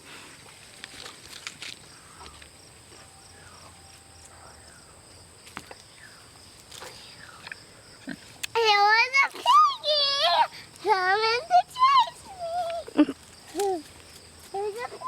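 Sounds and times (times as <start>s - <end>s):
high-pitched insect drone: 1.8s - 5.2s.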